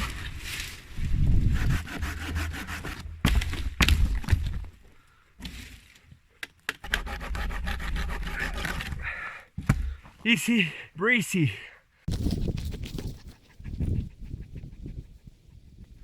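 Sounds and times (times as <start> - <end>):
hand saw cutting wood: 1.4 - 3.6, 6.8 - 9.1.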